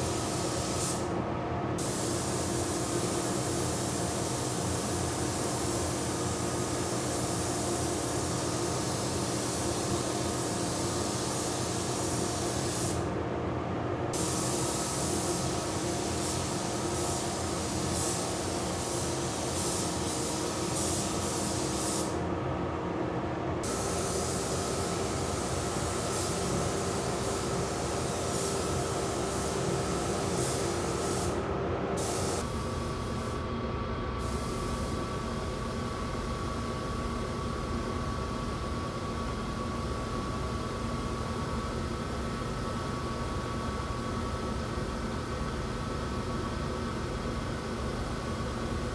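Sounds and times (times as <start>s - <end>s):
paint spray gun hissing: 1.8s - 13.0s, 14.2s - 22.2s, 23.6s - 31.4s, 32.0s - 33.3s.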